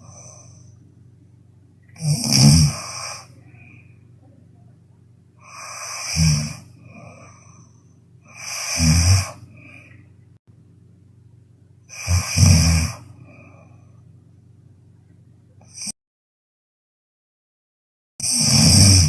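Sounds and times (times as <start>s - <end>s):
woman snoring: 0.0s - 0.8s, 2.0s - 4.0s, 5.4s - 10.0s, 11.9s - 13.8s, 15.6s - 16.0s, 18.2s - 19.0s.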